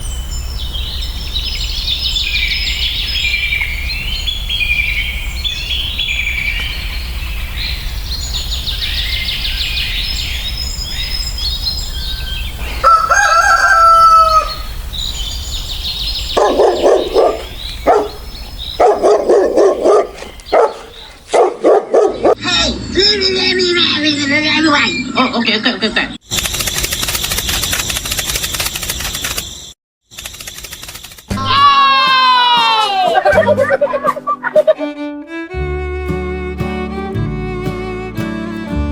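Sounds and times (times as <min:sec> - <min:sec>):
songbirds chirping: 0:00.0 - 0:31.6
rooster crowing: 0:12.6 - 0:14.8.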